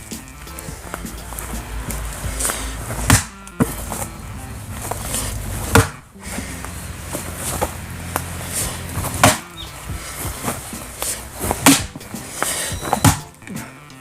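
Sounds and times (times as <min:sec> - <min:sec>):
wood knocking: 0:00.1 - 0:04.1, 0:04.8 - 0:13.4
axe splitting firewood: 0:02.1 - 0:04.0, 0:04.8 - 0:13.3.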